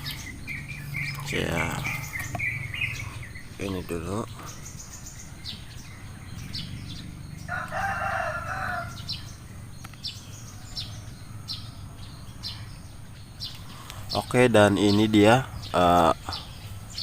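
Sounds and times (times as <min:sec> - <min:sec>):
small birds chirping: 0:00.0 - 0:17.0
rooster crowing: 0:07.4 - 0:09.3.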